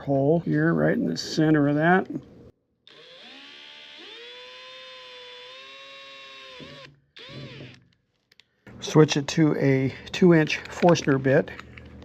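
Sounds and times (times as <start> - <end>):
electric drill whining: 2.9 - 8.0.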